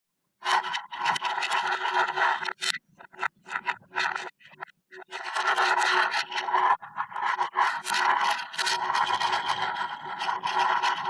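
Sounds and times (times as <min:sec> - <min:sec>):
magnetic balls scraping and rattling: 0:00.4 - 0:11.0.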